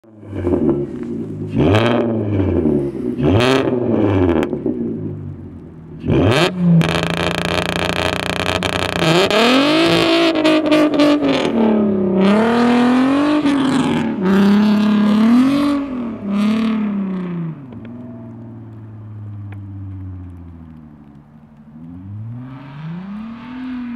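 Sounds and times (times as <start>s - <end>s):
car engine revving with crackling: 0.1s - 23.9s.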